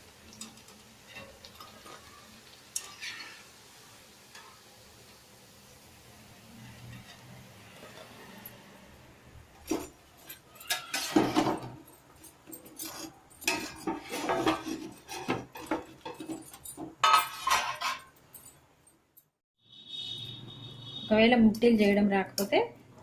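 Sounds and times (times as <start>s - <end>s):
kitchen utensils and dishes clinking: 0.1s - 4.7s, 6.8s - 8.8s, 9.5s - 18.6s.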